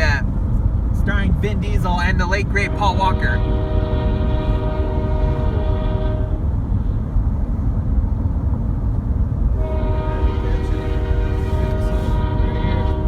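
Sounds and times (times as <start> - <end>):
moving train rumble: 0.0 - 13.0
locomotive air horn: 2.6 - 6.6, 9.6 - 13.0.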